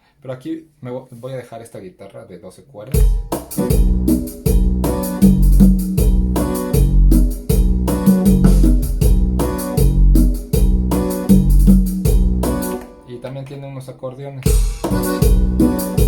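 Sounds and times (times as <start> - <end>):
keyboard cumbia accompaniment: 3.0 - 13.5, 14.5 - 16.0.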